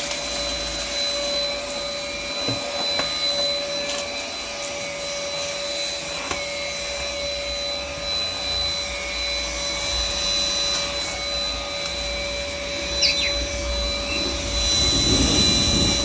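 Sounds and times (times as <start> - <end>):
stick vacuum running: 0.0 - 16.0
falling squeak: 12.8 - 16.0.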